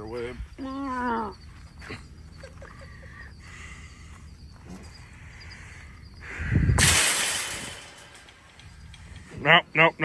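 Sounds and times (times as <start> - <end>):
insects chirping: 0.0 - 10.0.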